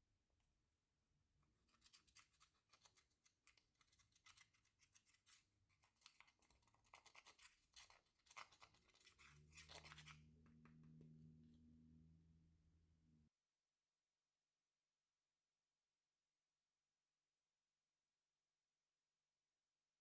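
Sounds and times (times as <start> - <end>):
low steady hum: 9.0 - 13.3.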